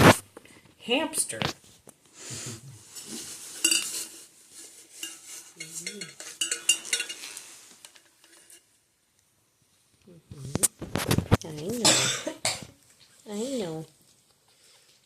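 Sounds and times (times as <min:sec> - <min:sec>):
rustling: 0:01.3 - 0:08.8.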